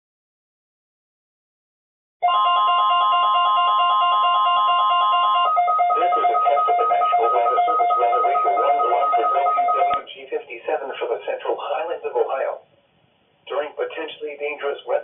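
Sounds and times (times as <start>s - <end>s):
steady high alarm tone: 2.2s - 10.0s
warbling two-pitch alert: 5.4s - 10.0s
faint broadcast voice: 5.9s - 12.7s, 13.5s - 15.0s.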